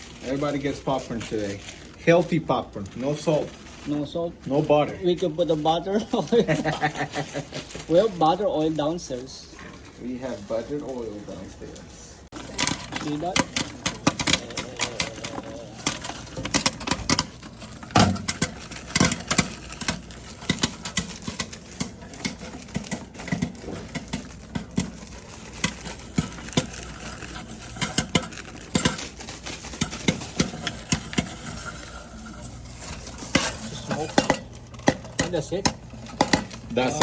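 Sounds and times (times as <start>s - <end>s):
popcorn popping: 0.0s - 37.0s.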